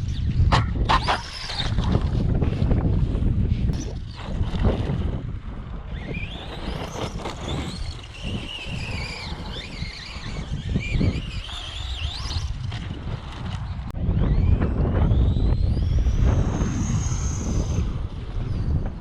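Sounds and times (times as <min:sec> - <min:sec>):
wind noise on microphone: 0:00.0 - 0:19.0
electric motor whining: 0:05.8 - 0:18.9.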